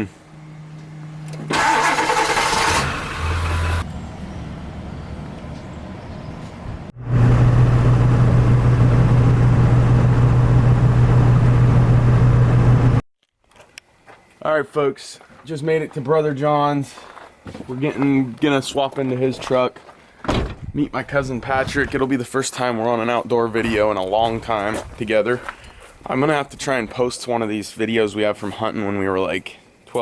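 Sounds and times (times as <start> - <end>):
vehicle engine starting and running: 1.2 - 13.0
road drone while driving: 1.5 - 13.0.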